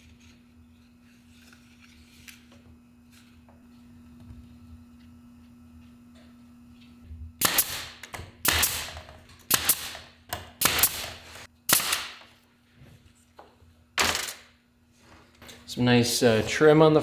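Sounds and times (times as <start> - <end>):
steady low hum: 0.0 - 17.0
nail gun firing into wood: 7.4 - 12.3.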